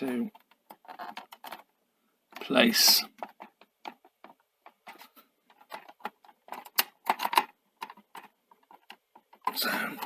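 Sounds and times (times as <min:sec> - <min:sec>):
plastic clicks and taps: 0:02.3 - 0:10.0.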